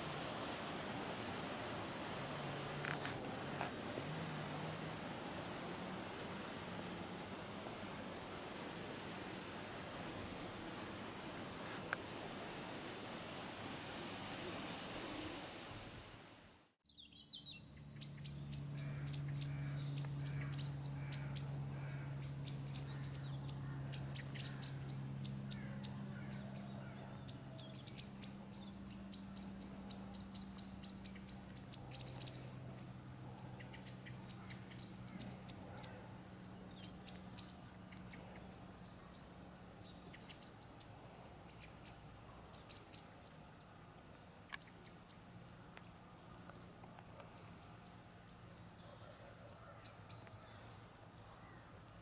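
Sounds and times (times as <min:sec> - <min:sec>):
small birds chirping: 0:16.8 - 0:51.8.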